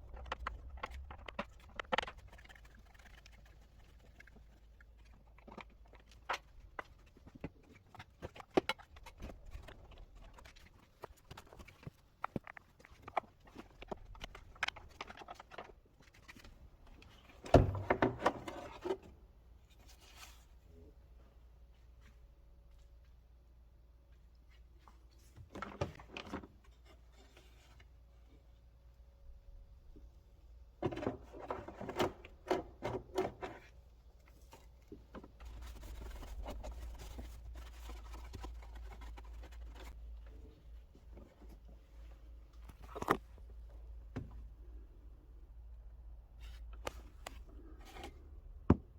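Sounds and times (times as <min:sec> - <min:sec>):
soft rubbing and rustling: 0:00.1 - 0:17.4, 0:33.7 - 0:43.7.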